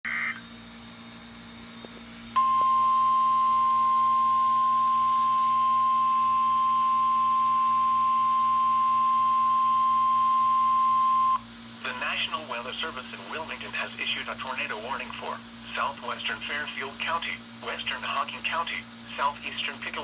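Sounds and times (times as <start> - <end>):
steady alarm beep: 2.4 - 11.4
faint radio hiss: 11.8 - 20.0.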